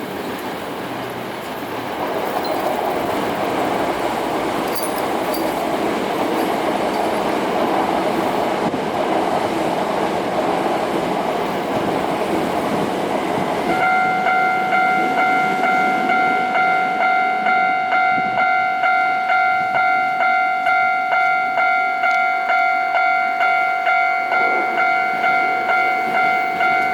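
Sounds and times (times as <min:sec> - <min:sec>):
train rumbling by: 0:00.0 - 0:26.9
level crossing alarm ringing: 0:13.7 - 0:26.9.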